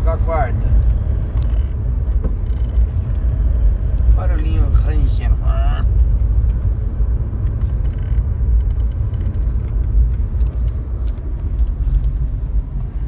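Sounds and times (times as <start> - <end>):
car interior road rumble: 0.0 - 13.0
faint ticks: 7.4 - 13.0.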